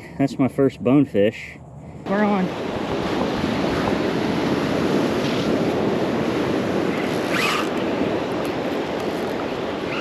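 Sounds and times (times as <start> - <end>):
wind and water rushing: 2.0 - 10.0
short high sliding sound: 6.9 - 7.8.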